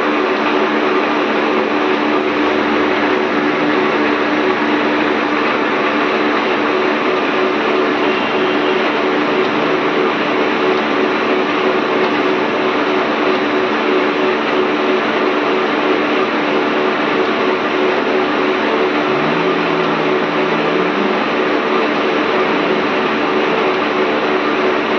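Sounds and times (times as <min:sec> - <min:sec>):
low rising tone: 0:17.9 - 0:24.0.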